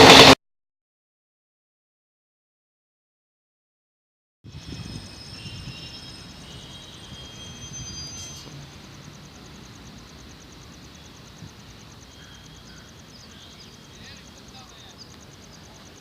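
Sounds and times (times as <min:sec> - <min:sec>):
thin high chirps: 0:04.5 - 0:08.5.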